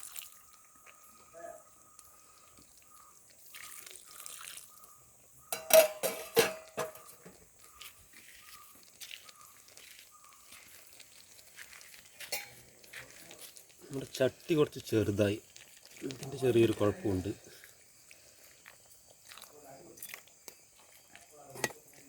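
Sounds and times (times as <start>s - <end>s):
faint liquid sounds: 0.0s - 22.0s
metal utensil scraping iron pan: 5.5s - 7.3s, 12.2s - 12.6s.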